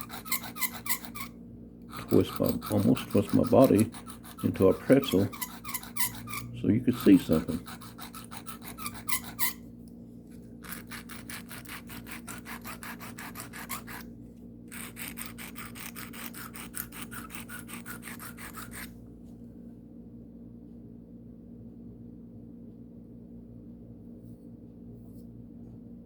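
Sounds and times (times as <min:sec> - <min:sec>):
knife scraping on sharpening stone: 0:00.0 - 0:01.3, 0:01.9 - 0:09.6, 0:10.6 - 0:14.1, 0:14.7 - 0:18.9.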